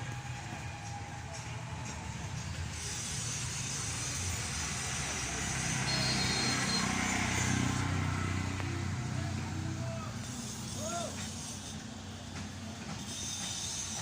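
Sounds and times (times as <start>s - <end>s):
diesel engine running: 0.0s - 12.9s
hiss above engine: 0.0s - 14.0s.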